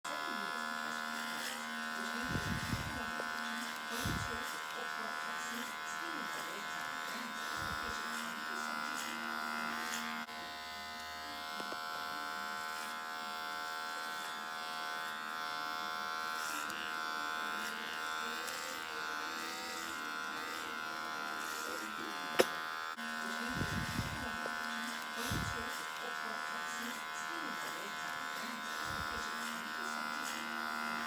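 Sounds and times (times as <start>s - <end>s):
electric hair clipper buzzing: 0.0s - 31.0s.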